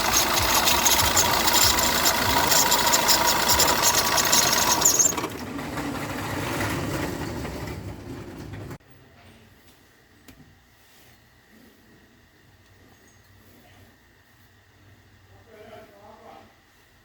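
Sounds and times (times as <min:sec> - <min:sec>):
car engine knocking rattle: 0:00.0 - 0:08.8.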